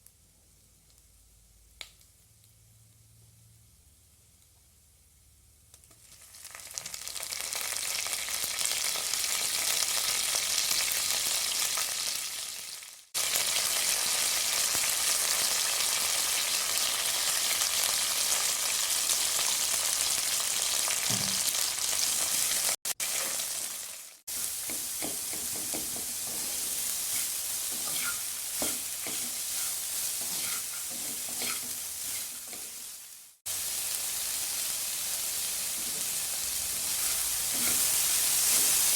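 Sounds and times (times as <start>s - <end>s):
food sizzling in oil: 5.9s - 38.9s
stirring taps and scrapes: 24.6s - 32.8s.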